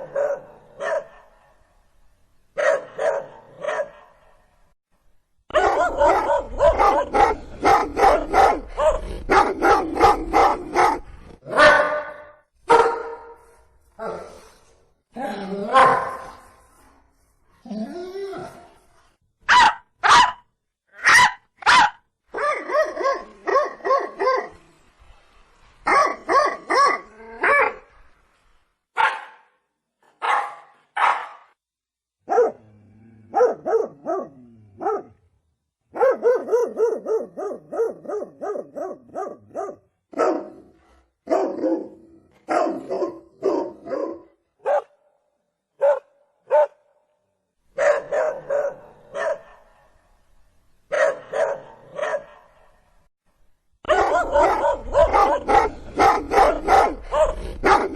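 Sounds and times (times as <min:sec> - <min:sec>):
dog barking: 0:00.0 - 0:01.6, 0:02.6 - 0:04.4, 0:05.5 - 0:13.4, 0:15.7 - 0:16.4, 0:19.5 - 0:20.4, 0:21.0 - 0:24.6, 0:25.9 - 0:27.8, 0:29.0 - 0:29.6, 0:30.2 - 0:31.6, 0:32.2 - 0:32.6, 0:33.3 - 0:35.2, 0:35.9 - 0:45.0, 0:45.8 - 0:46.9, 0:47.8 - 0:49.9, 0:50.9 - 0:52.8, 0:53.8 - 0:57.9.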